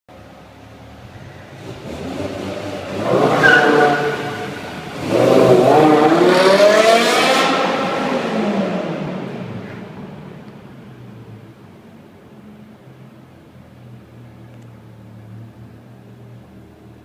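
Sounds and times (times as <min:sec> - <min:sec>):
car engine revving: 0:01.2 - 0:10.0.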